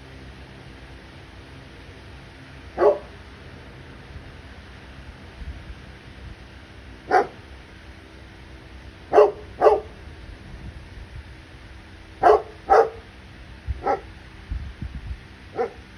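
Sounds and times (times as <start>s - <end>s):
dog barking: 2.8s - 3.2s, 7.1s - 7.4s, 9.1s - 10.0s, 12.2s - 13.0s, 13.8s - 14.1s, 15.5s - 15.8s.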